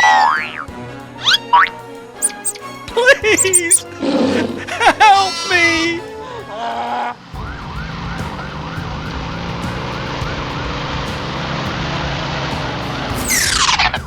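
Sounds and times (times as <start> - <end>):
siren yelping: 2.2 - 2.6, 3.3 - 3.8, 4.6 - 6.0
low drone: 3.5 - 6.6.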